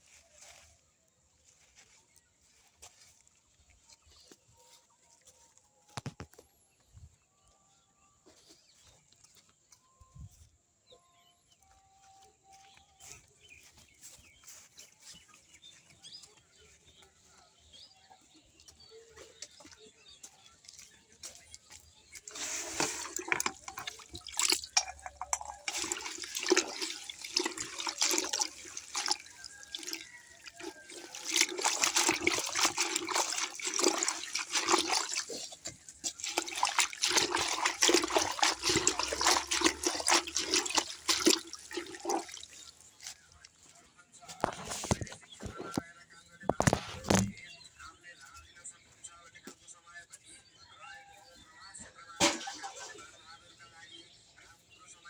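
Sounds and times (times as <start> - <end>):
splashing water: 18.8 - 43.7, 52.2 - 53.3.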